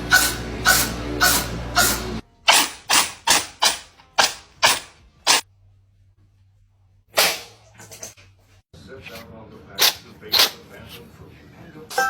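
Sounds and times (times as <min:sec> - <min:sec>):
cat sneezing: 0:09.8 - 0:10.6.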